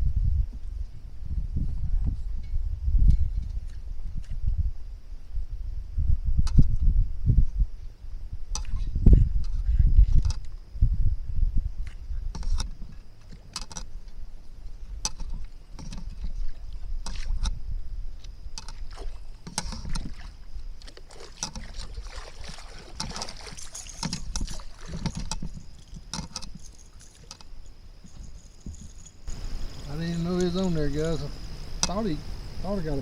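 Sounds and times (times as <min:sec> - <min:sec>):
wind buffeting microphone: 0:00.0 - 0:33.0
small clicks and knocks: 0:11.8 - 0:14.2, 0:15.0 - 0:16.3, 0:23.0 - 0:29.2
water lapping against kayak: 0:11.8 - 0:29.4.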